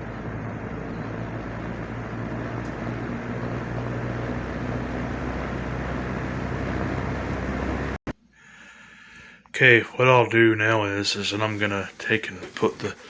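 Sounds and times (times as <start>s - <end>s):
electric fan motor hum: 0.0s - 8.0s
rush of air from fan blades: 0.0s - 8.0s.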